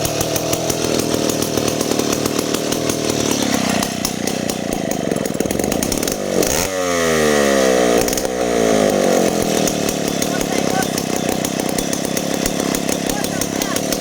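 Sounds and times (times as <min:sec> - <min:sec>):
chainsaw engine revving: 0:00.0 - 0:14.0.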